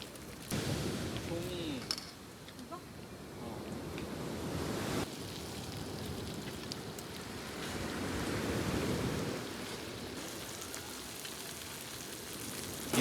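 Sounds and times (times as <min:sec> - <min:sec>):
meat sizzling on a grill: 0:10.2 - 0:13.0.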